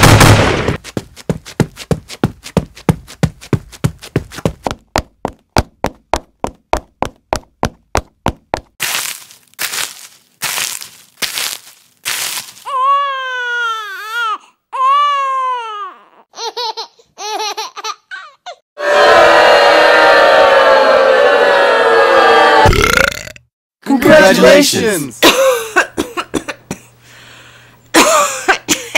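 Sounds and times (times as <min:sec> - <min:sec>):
long wavering pitched cries: 0:18.8 - 0:22.6.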